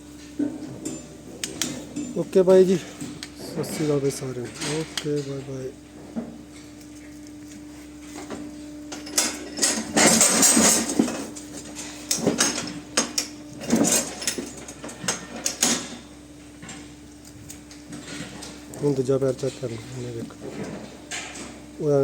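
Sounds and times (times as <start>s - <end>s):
steady low hum: 0.0s - 22.0s
metal clattering and scraping: 0.3s - 6.2s, 9.0s - 13.0s.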